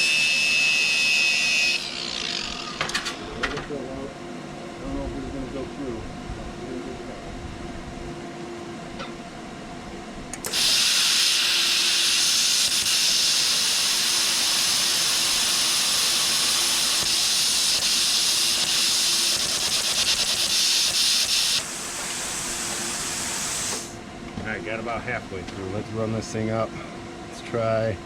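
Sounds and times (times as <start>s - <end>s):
steady low hum: 2.0s - 10.5s, 21.6s - 28.0s
plasma cutter hissing: 10.4s - 24.0s.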